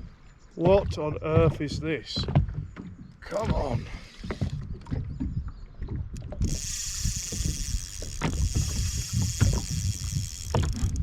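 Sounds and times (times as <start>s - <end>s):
fishing reel working: 6.4s - 11.0s.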